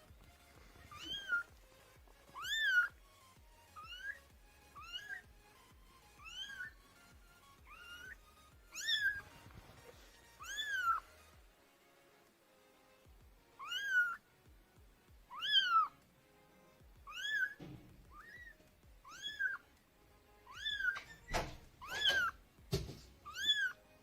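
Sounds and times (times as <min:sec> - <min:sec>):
kittens meowing: 0:00.8 - 0:01.5, 0:02.3 - 0:03.0, 0:03.7 - 0:05.3, 0:06.2 - 0:06.8, 0:07.6 - 0:09.3, 0:10.4 - 0:11.1, 0:13.6 - 0:14.2, 0:15.3 - 0:16.0, 0:17.0 - 0:19.6, 0:20.4 - 0:22.4, 0:23.2 - 0:23.8.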